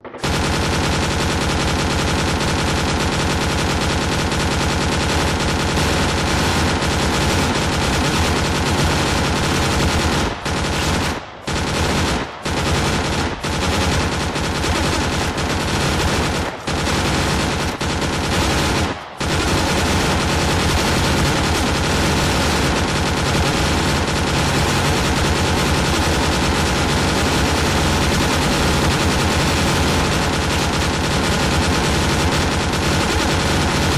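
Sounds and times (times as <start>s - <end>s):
machine gun firing bursts: 0.0s - 33.9s.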